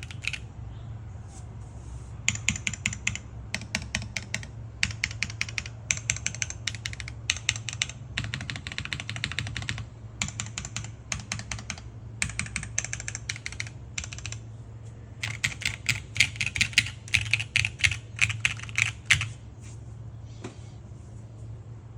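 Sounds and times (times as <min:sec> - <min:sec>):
mechanical keyboard typing: 0:00.0 - 0:00.4, 0:02.3 - 0:14.4, 0:15.2 - 0:19.4.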